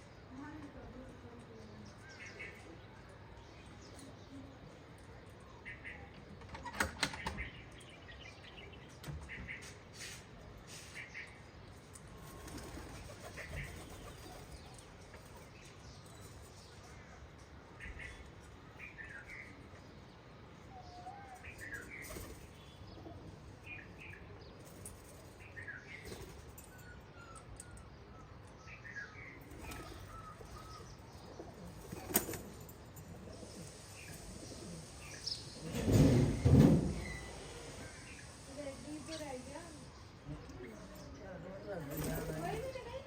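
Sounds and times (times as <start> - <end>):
flapping wings: 12.2 - 15.5.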